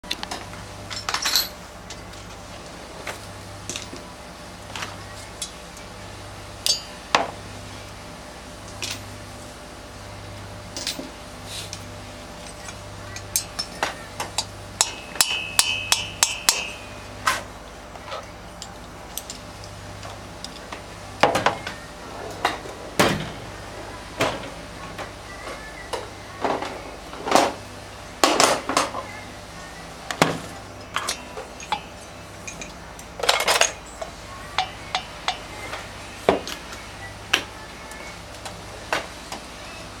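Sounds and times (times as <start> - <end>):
steady low hum: 0.0 - 40.0
metal tools clinking: 0.9 - 2.0, 12.4 - 17.4, 30.9 - 35.4
ringing metallic tone: 14.4 - 17.4.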